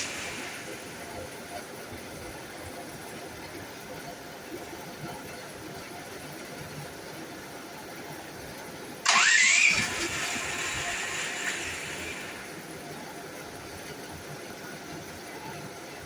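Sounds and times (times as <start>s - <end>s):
generator engine starting: 0.0s - 1.2s, 9.0s - 12.6s.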